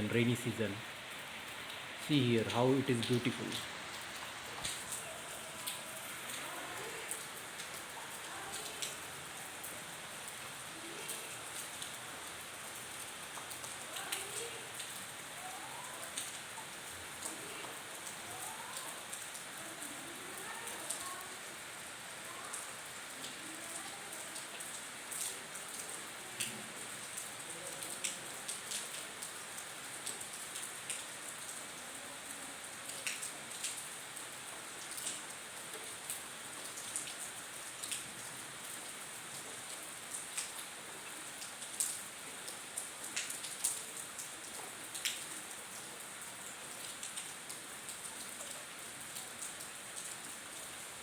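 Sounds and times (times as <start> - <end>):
heavy rain hissing: 0.0 - 25.4
raindrops tapping a surface: 0.2 - 51.0.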